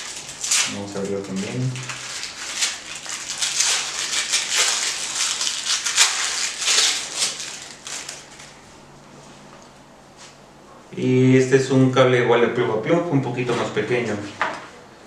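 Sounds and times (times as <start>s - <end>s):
packaging wrap crinkling: 0.0s - 8.8s.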